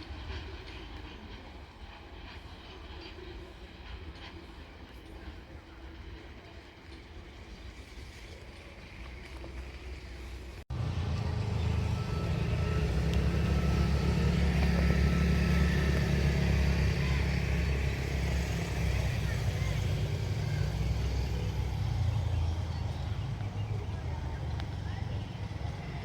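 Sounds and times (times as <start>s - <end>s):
vehicle low rumble: 7.8s - 26.0s.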